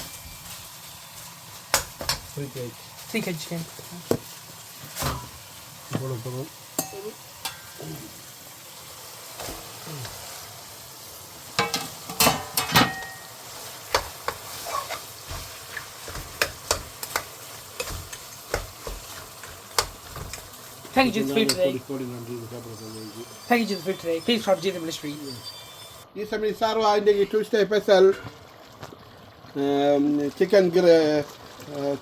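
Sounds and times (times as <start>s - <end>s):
chicken sizzling in a pot: 0.0s - 32.0s
utensil knocking and scraping pot: 11.6s - 21.8s.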